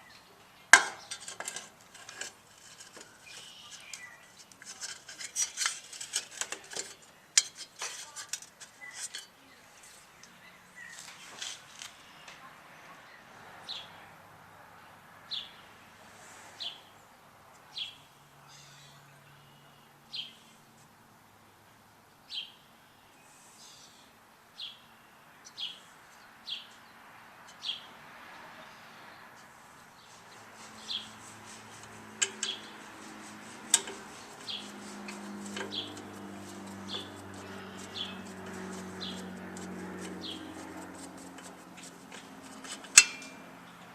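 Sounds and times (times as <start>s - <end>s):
bird chirping: 3.0s - 4.6s, 29.8s - 39.4s.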